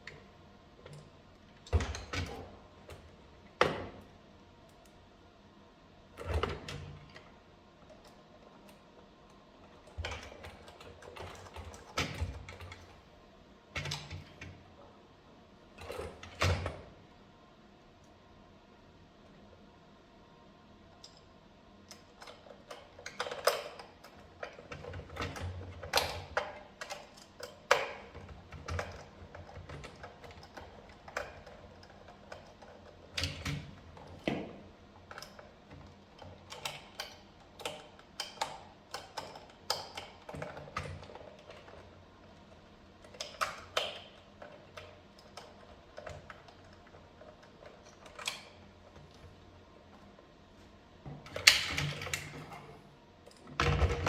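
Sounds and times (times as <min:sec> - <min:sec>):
clicks and knocks of hard parts: 0:51.1 - 0:54.0.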